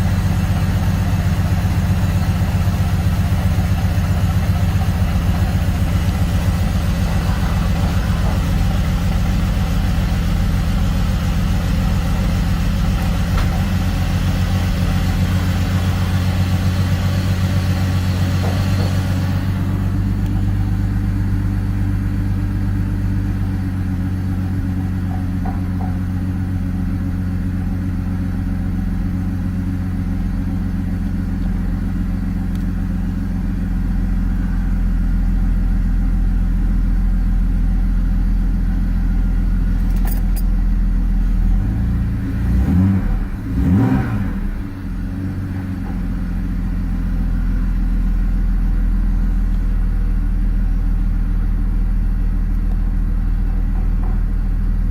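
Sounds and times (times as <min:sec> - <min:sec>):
engine revving: 0:00.0 - 0:22.2, 0:41.3 - 0:45.6
car engine idling roughly: 0:00.0 - 0:54.9.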